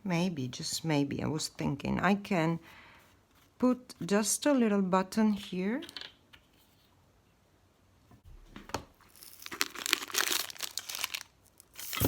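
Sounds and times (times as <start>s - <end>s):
craft materials crinkling: 9.0s - 12.0s.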